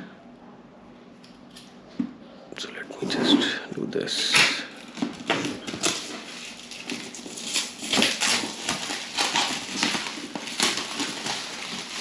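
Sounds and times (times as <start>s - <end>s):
box seal tearing: 4.3s - 12.0s
cardboard rustling and scraping: 4.3s - 12.0s.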